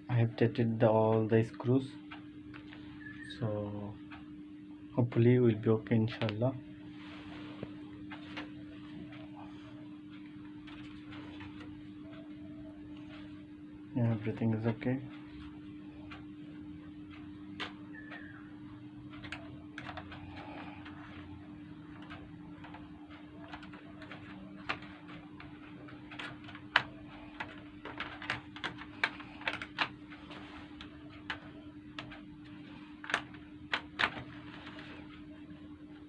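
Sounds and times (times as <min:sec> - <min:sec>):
steady low hum: 0:00.0 - 0:36.0
clicks and taps of handling: 0:19.1 - 0:35.1.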